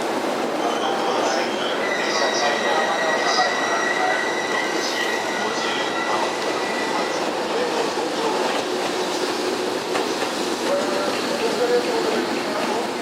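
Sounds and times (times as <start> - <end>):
train wheels rumbling on rail: 0.0 - 13.0
high wheel squeal: 0.6 - 7.5.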